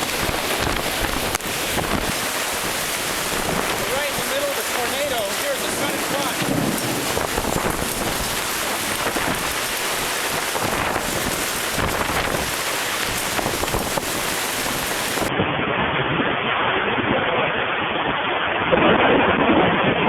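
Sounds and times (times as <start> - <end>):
heavy rain pouring: 0.0 - 15.3.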